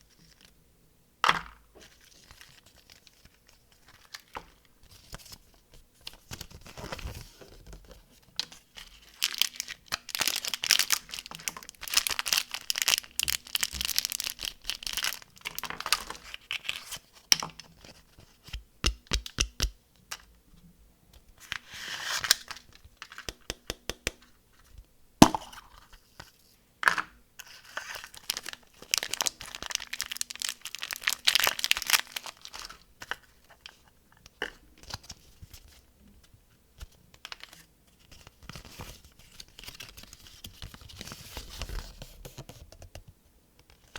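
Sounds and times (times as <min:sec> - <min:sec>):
candy wrappers crinkling: 0:08.7 - 0:17.0, 0:27.4 - 0:33.8.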